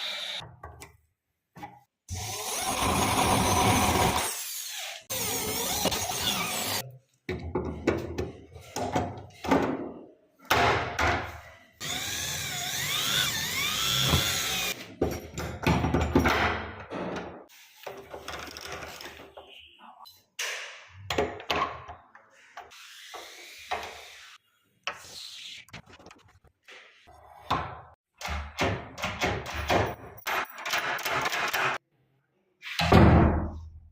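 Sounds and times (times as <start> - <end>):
power drill boring into wood: 2.1 - 6.8, 11.8 - 14.8.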